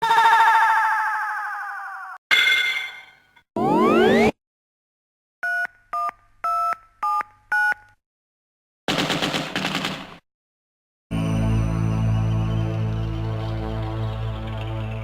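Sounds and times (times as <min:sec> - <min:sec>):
telephone keypad dialing beeps: 0:05.4 - 0:07.8
music: 0:11.1 - 0:15.0.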